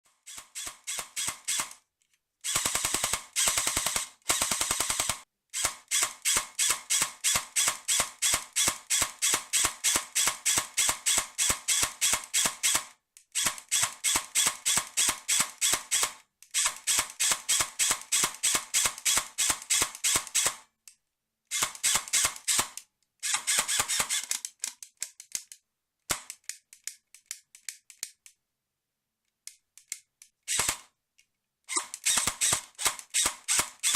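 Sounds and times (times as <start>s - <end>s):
airsoft gun firing bursts: 2.5s - 20.6s, 21.5s - 24.3s, 31.8s - 33.9s.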